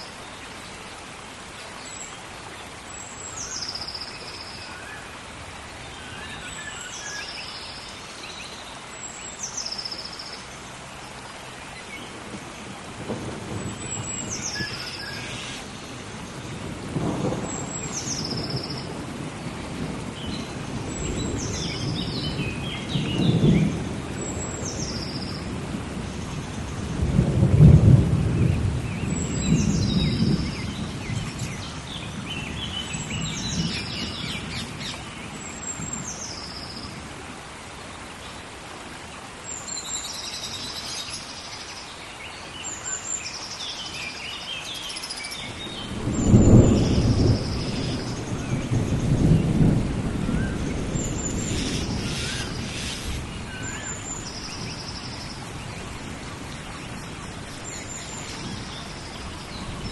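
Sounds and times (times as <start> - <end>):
heavy rain: 0.0 - 59.9
thunder rumbling: 12.3 - 15.4, 16.1 - 24.8, 25.4 - 34.9, 45.5 - 53.6.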